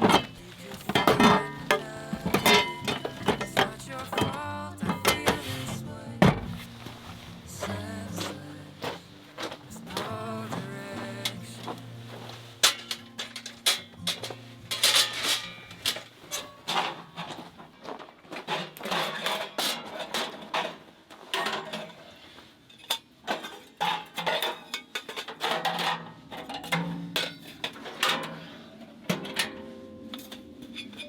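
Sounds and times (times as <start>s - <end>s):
hard objects clattering: 0.0s - 11.8s
faint light music: 0.0s - 17.6s, 25.4s - 31.0s.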